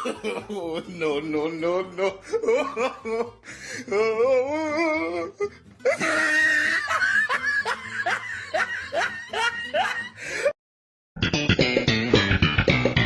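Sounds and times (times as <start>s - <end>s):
person snickering: 5.9s - 10.5s
bass and electric guitar riff: 11.2s - 13.0s.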